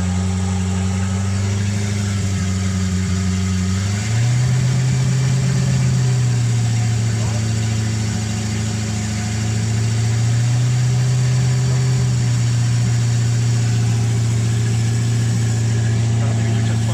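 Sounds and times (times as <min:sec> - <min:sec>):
marine engine idling: 0:00.0 - 0:16.9.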